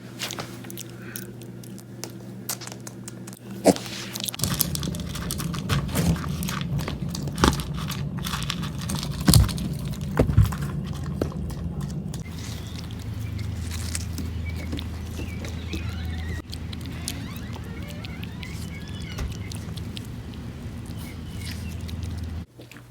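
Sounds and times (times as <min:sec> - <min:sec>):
pig chewing and crunching: 0:00.0 - 0:22.9.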